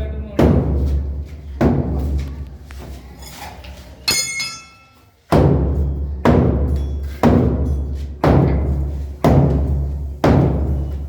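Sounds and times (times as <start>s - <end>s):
metal clang: 3.2s - 6.1s.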